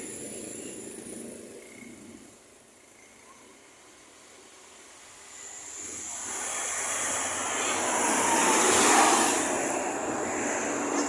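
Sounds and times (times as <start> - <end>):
vehicle driving past: 5.8 - 11.0.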